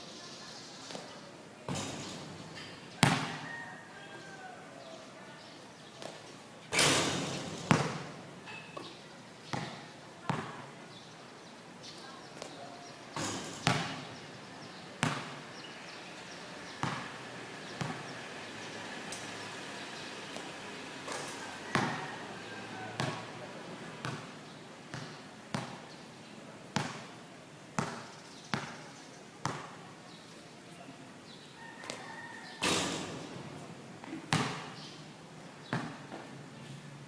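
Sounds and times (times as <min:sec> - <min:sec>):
basketball bouncing on hard court: 0:03.0 - 0:03.4, 0:07.4 - 0:08.2, 0:09.5 - 0:10.6, 0:13.2 - 0:14.1, 0:15.0 - 0:15.4, 0:16.8 - 0:17.2, 0:17.8 - 0:18.1, 0:21.1 - 0:22.1, 0:23.0 - 0:23.3, 0:24.0 - 0:24.3, 0:24.9 - 0:25.8, 0:26.8 - 0:27.1, 0:27.8 - 0:28.8, 0:29.4 - 0:29.8, 0:34.3 - 0:34.8, 0:35.7 - 0:36.3
faint voices: 0:20.4 - 0:24.6.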